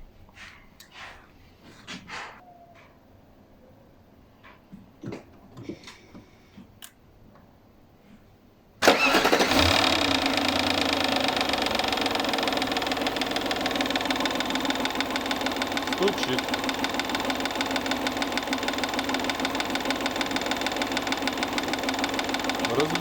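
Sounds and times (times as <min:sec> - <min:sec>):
car engine cranking and idling: 0:08.8 - 0:23.0
engine knocking: 0:08.9 - 0:23.0.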